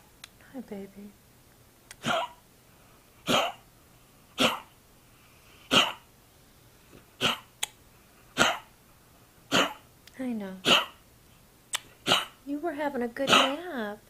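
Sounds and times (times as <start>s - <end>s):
dog coughing: 2.0s - 2.4s, 3.2s - 3.7s, 4.4s - 4.8s, 5.7s - 6.1s, 7.2s - 7.6s, 8.3s - 8.7s, 9.5s - 9.9s, 10.6s - 11.0s, 11.8s - 12.4s, 13.2s - 13.7s.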